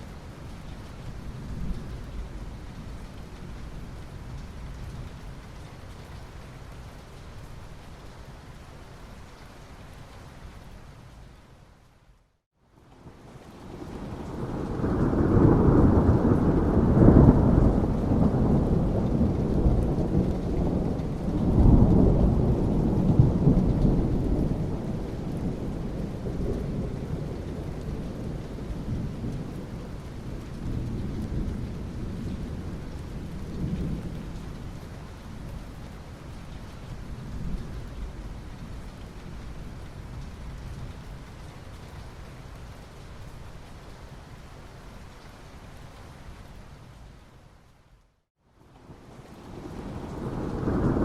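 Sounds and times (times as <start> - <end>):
steady rain: 0.0 - 51.0
rolling thunder: 13.6 - 34.4, 48.9 - 51.0.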